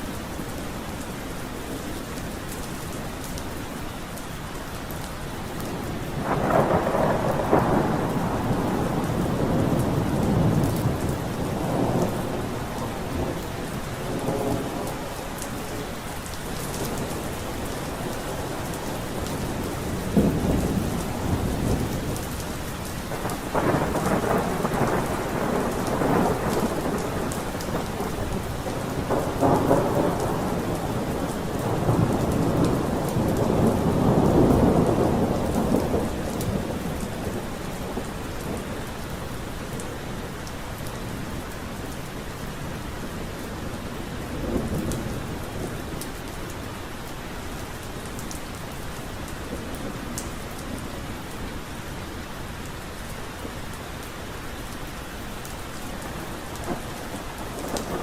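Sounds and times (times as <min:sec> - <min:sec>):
steady rain: 0:00.0 - 0:58.0
thunder rumbling: 0:05.7 - 0:39.1, 0:43.0 - 0:47.0, 0:55.6 - 0:58.0.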